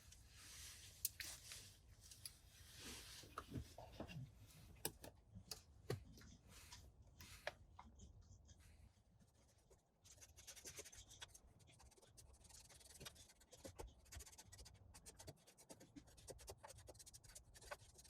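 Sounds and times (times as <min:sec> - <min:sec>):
marker scratching: 0:09.3 - 0:18.0.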